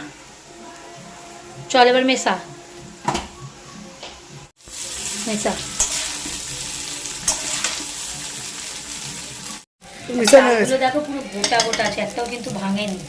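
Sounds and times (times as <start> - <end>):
rice sizzling in oil: 4.5 - 13.0
spatula scraping pan: 4.8 - 8.4.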